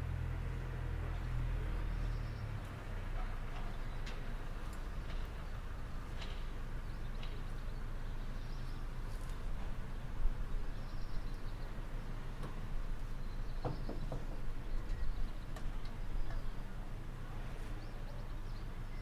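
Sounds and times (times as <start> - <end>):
knocks: 13.6 - 14.5.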